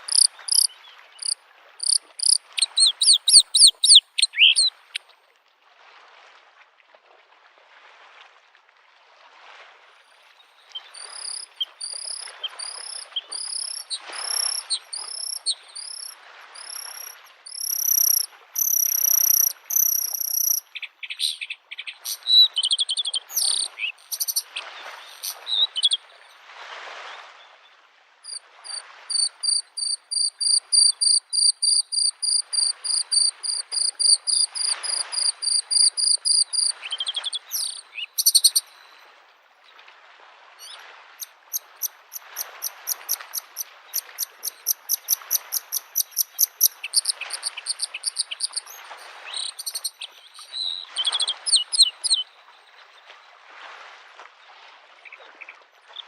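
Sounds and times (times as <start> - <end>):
bird singing rapid high notes: 0.0 - 5.0, 10.8 - 20.6, 23.0 - 24.4, 37.4 - 38.6
small waves washing on shore: 0.0 - 56.0.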